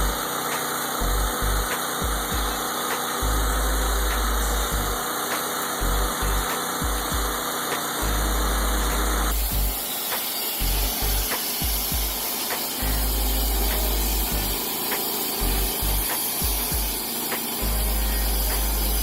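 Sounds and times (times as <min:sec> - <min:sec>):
sawmill machinery running: 0:00.0 - 0:19.0
deep thumps: 0:01.4 - 0:02.6, 0:05.9 - 0:07.4, 0:08.4 - 0:09.8.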